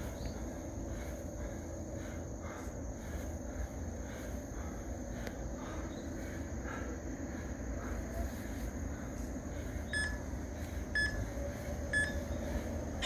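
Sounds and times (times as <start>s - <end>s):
steady hum: 0.0s - 13.0s
electronic timer beeping: 10.0s - 10.2s, 11.0s - 11.2s, 11.9s - 12.2s.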